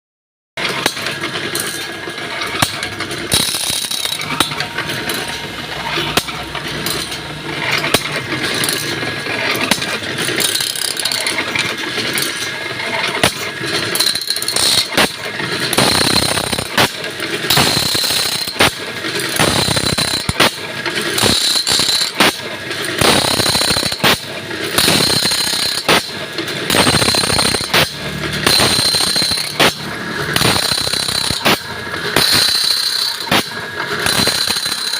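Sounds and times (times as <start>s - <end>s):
grinding wheel squealing on saw teeth: 0.6s - 34.9s
high machine whine: 0.6s - 34.9s.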